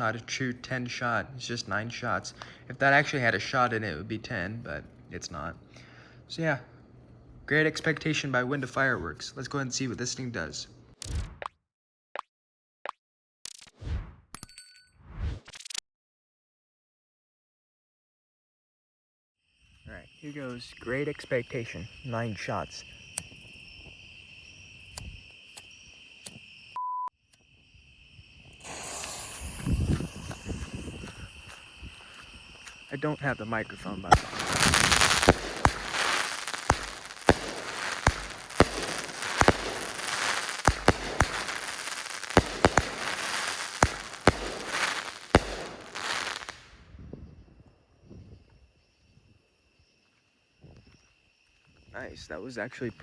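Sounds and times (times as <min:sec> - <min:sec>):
crickets trilling: 0:00.0 - 0:10.4, 0:19.4 - 0:53.0
faint insect chirr: 0:00.0 - 0:10.7, 0:19.4 - 0:53.0
fireworks crackling: 0:20.0 - 0:26.8, 0:27.4 - 0:46.8
short electronic beep: 0:26.8 - 0:27.1
fuse hissing: 0:27.4 - 0:46.7
firework low thump: 0:34.1 - 0:46.6.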